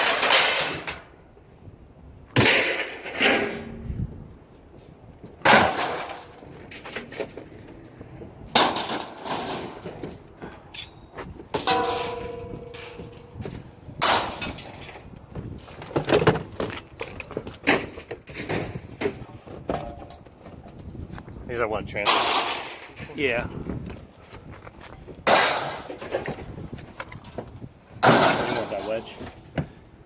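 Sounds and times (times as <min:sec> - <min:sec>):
scrap metal clanging onto pile: 0:00.0 - 0:01.1, 0:02.4 - 0:03.9, 0:05.4 - 0:07.6, 0:08.5 - 0:15.1, 0:22.0 - 0:23.2, 0:25.3 - 0:26.4, 0:28.0 - 0:29.4.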